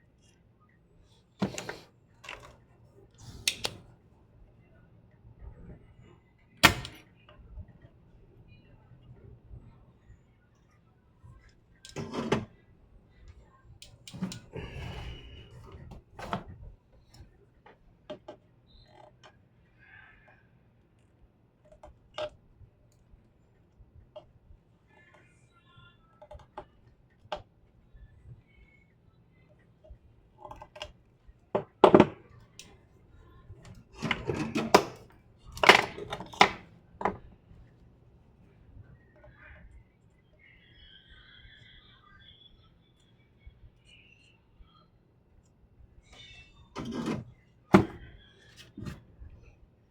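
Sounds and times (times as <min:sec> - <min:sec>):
objects knocking and clicking: 0:35.6 - 0:37.2.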